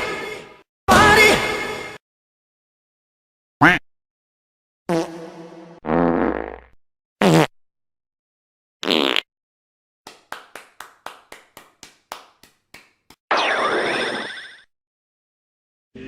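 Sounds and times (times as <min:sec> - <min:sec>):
fart sound effect: 0:04.9 - 0:07.5.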